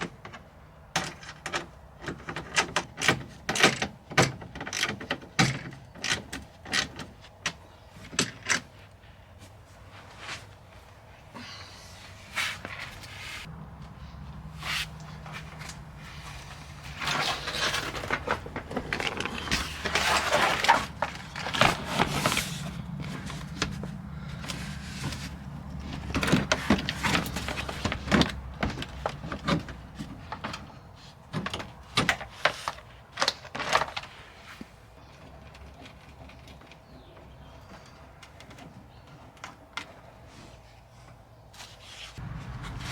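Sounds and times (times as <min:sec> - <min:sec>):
tools knocking and clattering: 0:00.0 - 0:08.7
scraping or rustling: 0:12.2 - 0:28.2, 0:41.6 - 0:42.9.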